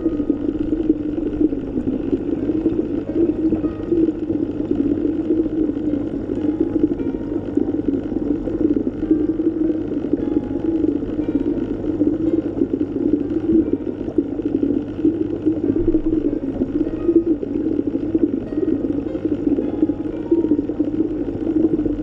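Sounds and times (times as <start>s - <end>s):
underwater water rushing: 0.0s - 22.0s.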